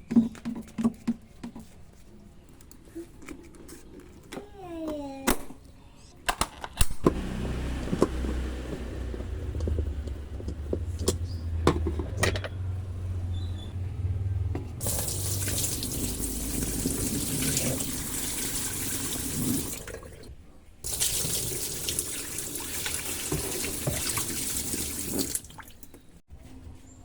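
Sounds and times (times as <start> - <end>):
pump motor humming: 7.1 - 10.3, 14.8 - 20.2, 20.9 - 25.6
water jet spraying hiss: 14.8 - 19.8.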